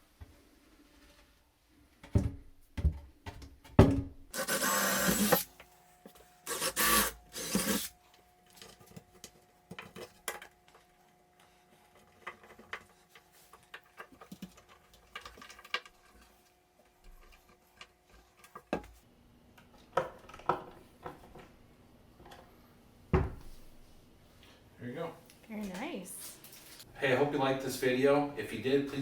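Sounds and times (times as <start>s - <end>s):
loud rasping noise: 4.4s - 5.4s, 6.5s - 7.9s.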